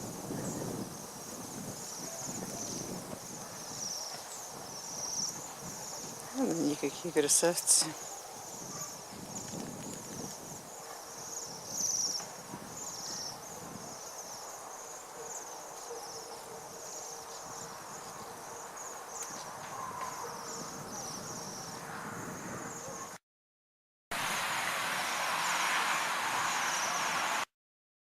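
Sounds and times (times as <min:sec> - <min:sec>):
small birds trilling chirps: 0:00.0 - 0:23.2.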